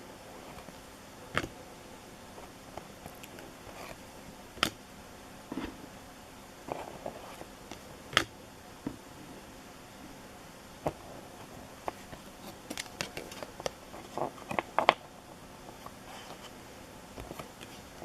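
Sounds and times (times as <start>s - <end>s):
soft rustling of cards: 0.3s - 1.6s, 2.3s - 4.8s, 6.6s - 8.3s, 10.8s - 18.0s
cards snapping: 11.9s - 15.0s.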